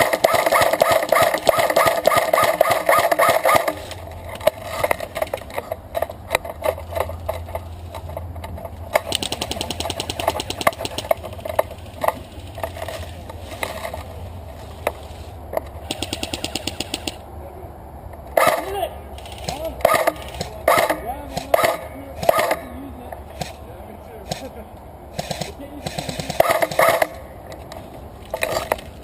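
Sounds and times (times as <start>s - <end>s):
airsoft guns firing bursts: 0.0s - 3.8s, 8.9s - 12.5s, 15.8s - 17.2s, 19.2s - 22.6s, 25.1s - 27.2s
sharp clicks: 0.0s - 12.9s, 14.8s - 17.3s, 18.1s - 23.6s, 25.1s - 29.0s.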